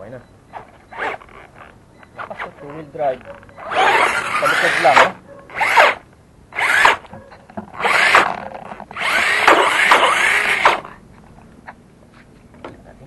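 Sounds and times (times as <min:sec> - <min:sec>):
electric motor whine revving: 0:03.6 - 0:06.0, 0:06.6 - 0:07.0, 0:07.8 - 0:08.4, 0:09.0 - 0:10.9.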